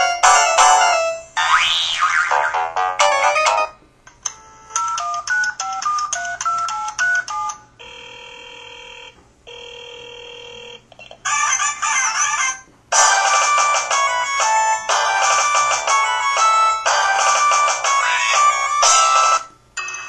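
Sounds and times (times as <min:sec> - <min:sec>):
electronic ringtone melody: 0:00.0 - 0:01.3, 0:02.8 - 0:03.8, 0:13.0 - 0:20.0.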